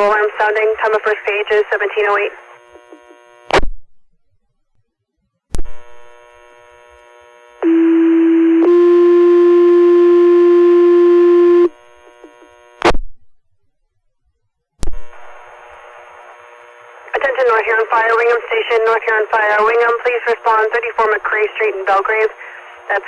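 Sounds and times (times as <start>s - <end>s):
radio squelch burst: 0.0s - 3.6s, 14.9s - 23.0s
radio keying click: 0.8s - 3.6s, 12.1s - 13.0s.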